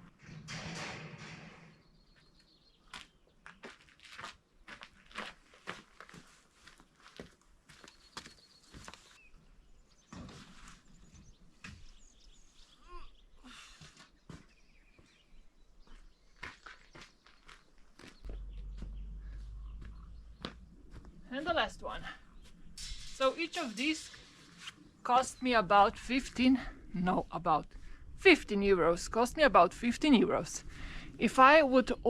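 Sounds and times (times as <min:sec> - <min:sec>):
birds chirping: 0:01.5 - 0:04.7, 0:07.7 - 0:32.0
footsteps with knocks and scrapes: 0:02.1 - 0:09.2, 0:10.0 - 0:12.0, 0:13.6 - 0:23.3.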